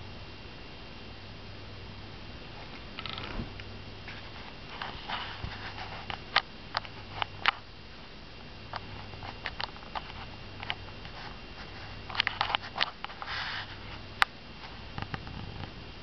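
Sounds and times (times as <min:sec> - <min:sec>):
light clicks and taps: 0:08.7 - 0:11.2.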